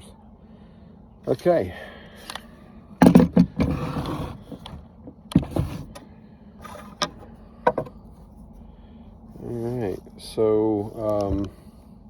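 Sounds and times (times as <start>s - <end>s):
chainsaw parts knocking and rattling: 3.0s - 3.7s.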